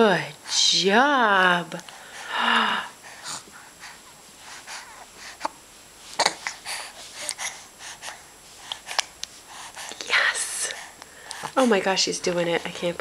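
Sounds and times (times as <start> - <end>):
baby breathing softly: 1.9 - 5.6, 6.4 - 11.8.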